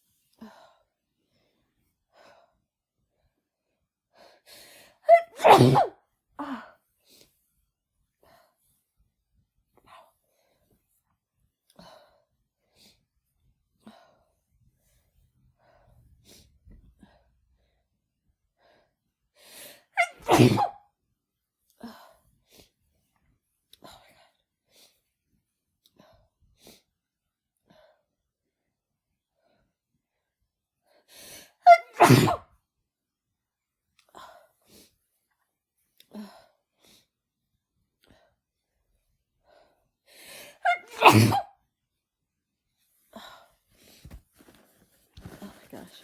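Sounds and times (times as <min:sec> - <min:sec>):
woman breathing: 0:04.1 - 0:05.0, 0:39.4 - 0:40.7
woman sneezing loudly: 0:05.1 - 0:06.0, 0:20.0 - 0:20.8, 0:31.6 - 0:32.5, 0:40.6 - 0:41.6
woman breathing and sighing: 0:06.3 - 0:08.9, 0:35.9 - 0:37.2, 0:42.8 - 0:46.0.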